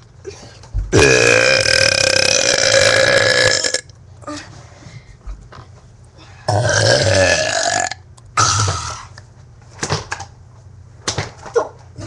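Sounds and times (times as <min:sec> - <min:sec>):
person burping: 0:00.9 - 0:03.9, 0:06.5 - 0:09.1.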